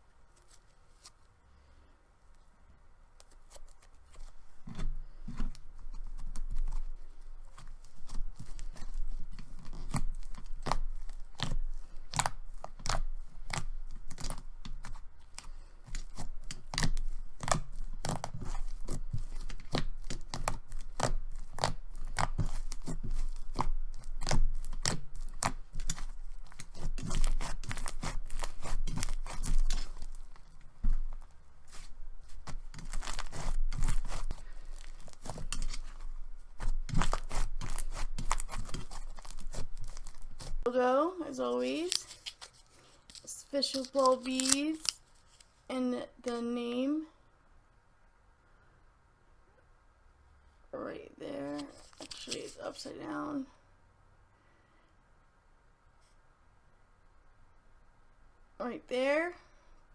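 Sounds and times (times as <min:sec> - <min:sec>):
crackling crinkling and tearing: 0:03.2 - 0:45.7, 0:51.4 - 0:53.2.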